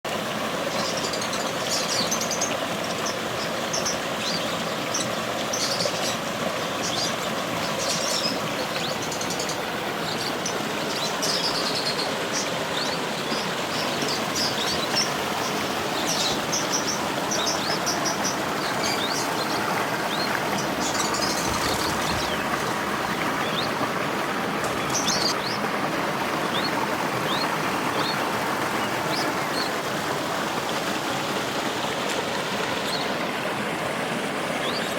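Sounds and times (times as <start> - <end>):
creek rushing: 0.1 - 34.9
small birds chirping: 0.7 - 25.8, 26.4 - 29.8, 34.6 - 34.9.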